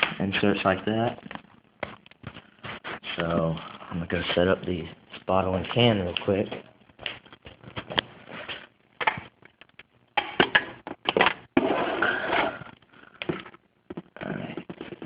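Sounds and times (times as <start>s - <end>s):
rustling and scraping: 0.7s - 4.4s, 6.5s - 9.4s, 11.2s - 15.0s
knocks and clatters of handling: 13.2s - 15.0s.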